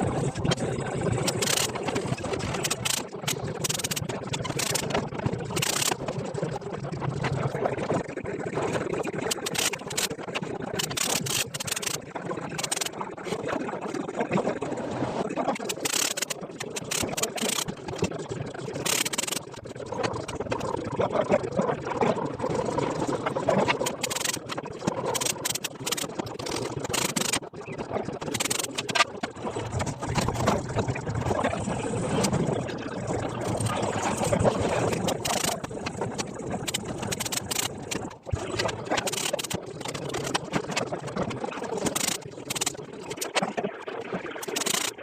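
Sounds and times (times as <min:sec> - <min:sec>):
steady rumbling noise: 0:00.0 - 0:13.5, 0:14.5 - 0:43.4
sharp knocks and clicks: 0:34.9 - 0:38.1.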